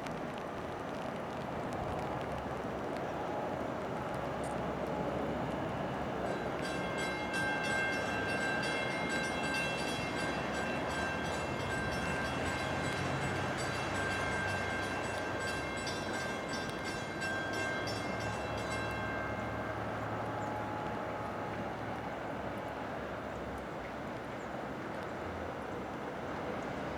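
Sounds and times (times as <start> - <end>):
low train rumble: 0.0 - 26.9
rapid metallic bell ringing: 6.3 - 20.2.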